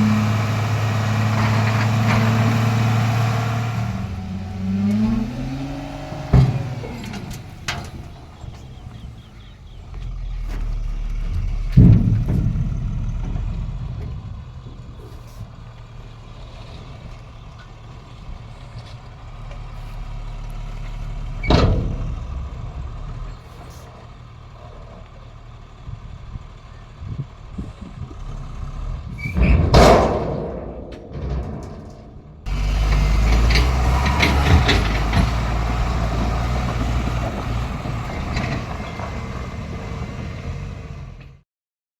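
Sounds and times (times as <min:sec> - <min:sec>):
loud crashes: 0:00.0 - 0:17.6, 0:29.1 - 0:40.7
heavy diesel engine running: 0:00.0 - 0:30.1, 0:31.2 - 0:41.4.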